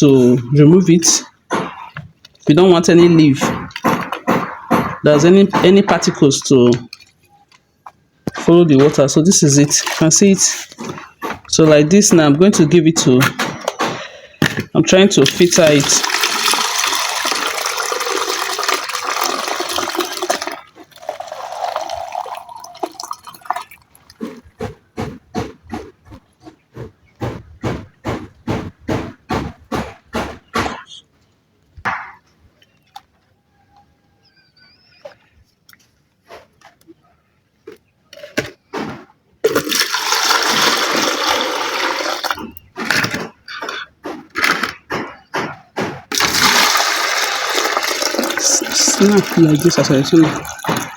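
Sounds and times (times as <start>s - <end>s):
water pouring through a sieve: 9.5s - 10.8s, 15.2s - 24.2s, 39.5s - 42.6s, 46.1s - 50.9s.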